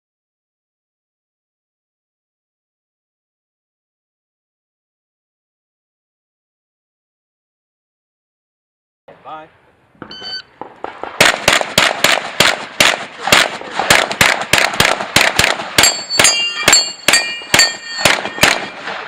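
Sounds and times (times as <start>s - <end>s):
shot timer beep: 10.1s - 10.5s
rapid pistol shots: 10.6s - 19.0s
steel targets clanging: 15.8s - 19.0s.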